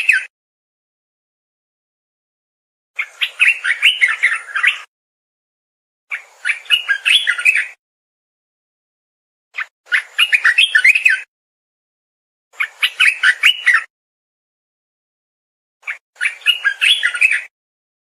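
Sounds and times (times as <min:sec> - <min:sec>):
bird singing warbled phrases: 0:00.0 - 0:00.3, 0:03.0 - 0:04.9, 0:06.1 - 0:07.8, 0:09.6 - 0:11.3, 0:12.5 - 0:13.9, 0:15.8 - 0:17.5.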